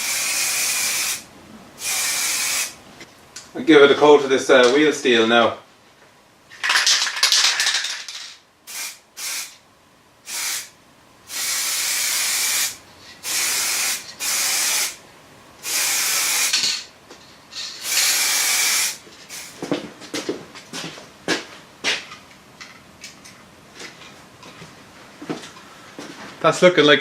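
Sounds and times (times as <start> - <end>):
aerosol spray can hissing: 0.0 - 1.2, 1.8 - 2.8, 8.7 - 9.6, 10.3 - 10.7, 11.3 - 15.0, 15.6 - 16.6, 17.8 - 19.6.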